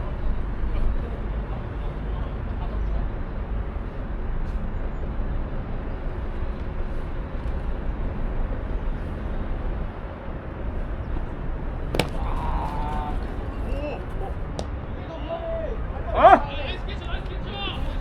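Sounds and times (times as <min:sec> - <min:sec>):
steady outdoor rumble: 0:00.0 - 0:18.0
sharp crack: 0:11.9 - 0:12.9.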